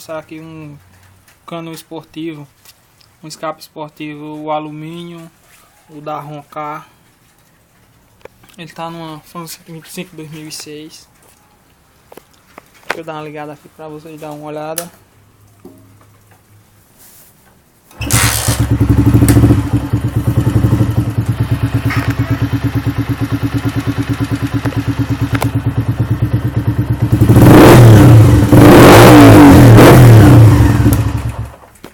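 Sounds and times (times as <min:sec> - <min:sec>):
motorcycle engine idling and revving: 0:18.0 - 0:31.8.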